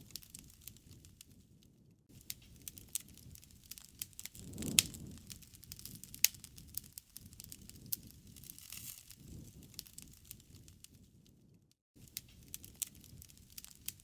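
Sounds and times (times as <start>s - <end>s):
wood fire crackling: 0.0s - 14.0s.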